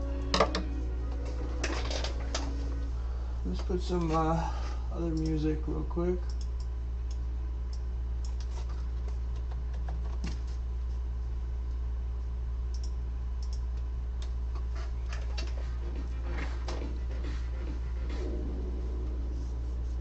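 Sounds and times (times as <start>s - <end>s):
low electrical hum: 0.0s - 20.0s.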